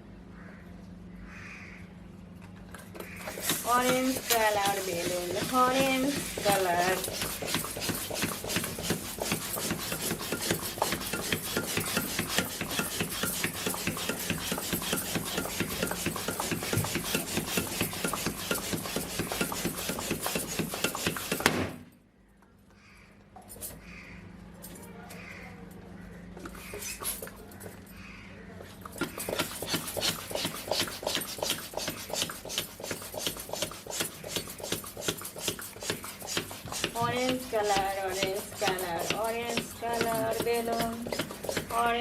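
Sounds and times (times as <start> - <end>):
balloon rubbed and squeaking: 3.1 - 21.5, 29.0 - 42.0.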